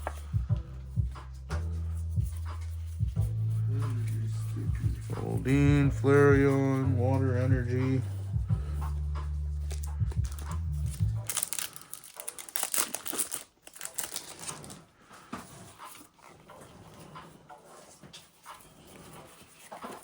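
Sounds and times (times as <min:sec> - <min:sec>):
low rumble: 0:00.2 - 0:11.3
foil wrappers crinkling and tearing: 0:09.6 - 0:14.9.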